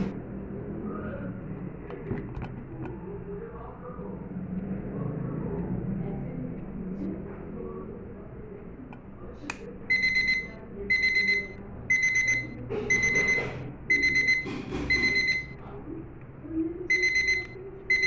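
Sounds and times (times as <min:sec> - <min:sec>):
alarm clock beeping: 0:09.9 - 0:15.6, 0:16.9 - 0:18.0.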